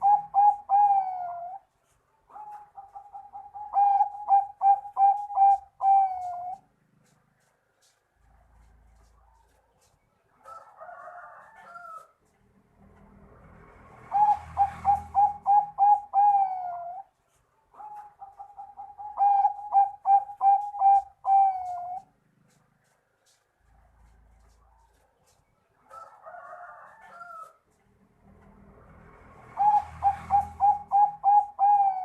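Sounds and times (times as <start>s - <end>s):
dove cooing: 0.0s - 7.2s, 14.0s - 17.1s, 17.7s - 22.6s, 29.5s - 32.0s.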